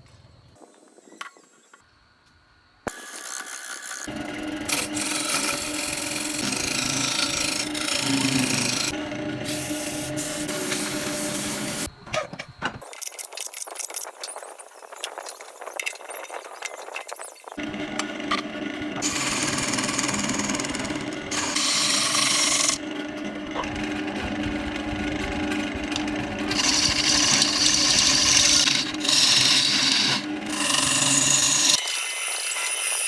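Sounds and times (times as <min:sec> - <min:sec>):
turning tool scraping wood: 0:03.0 - 0:11.9, 0:17.7 - 0:23.3, 0:25.4 - 0:33.0
wood lathe motor hum: 0:03.0 - 0:11.9, 0:17.6 - 0:33.0.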